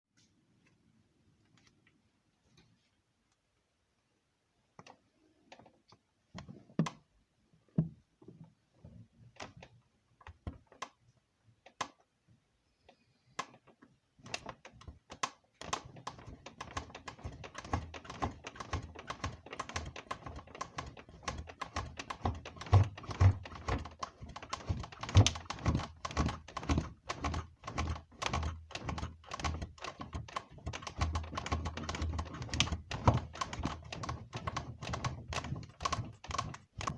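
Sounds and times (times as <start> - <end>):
bed creaking and knocking: 13.6 - 36.9.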